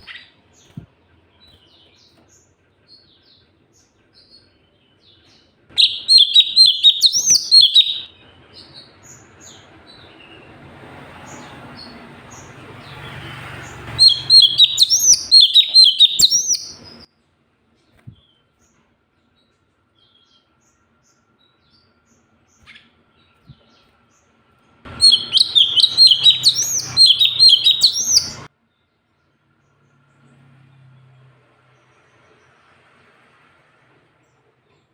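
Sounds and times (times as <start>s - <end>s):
bird chirping trills: 3.0s - 10.4s, 11.2s - 17.1s, 24.9s - 28.5s.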